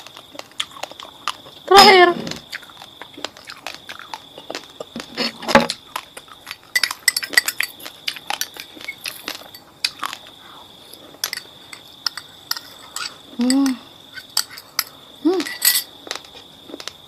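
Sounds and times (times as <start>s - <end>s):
crunching and chewing rice: 0.0s - 1.7s, 2.3s - 17.0s
utensil clinking: 6.4s - 10.2s, 10.9s - 16.2s.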